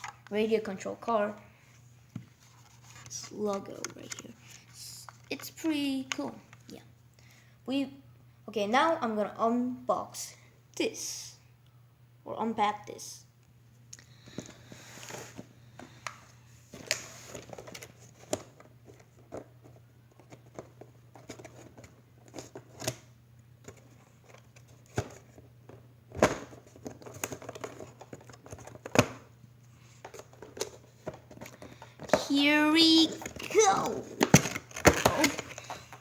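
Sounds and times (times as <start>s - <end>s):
packaging crinkling and rustling: 26.3s - 29.0s.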